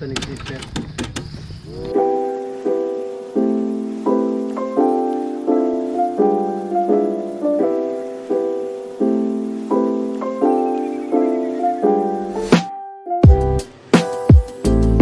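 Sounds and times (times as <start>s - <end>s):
mellow lofi piano chords: 1.7s - 15.0s.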